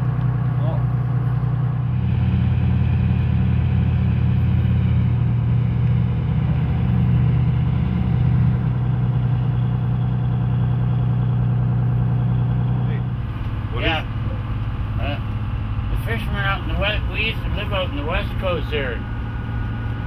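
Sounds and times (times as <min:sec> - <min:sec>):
diesel engine humming: 0:00.0 - 0:20.0.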